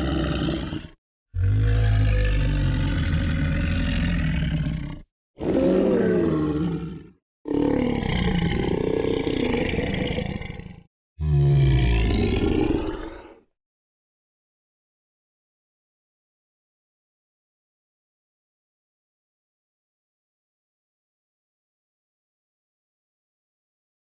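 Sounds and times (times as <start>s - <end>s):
monster groans: 0.0s - 13.4s.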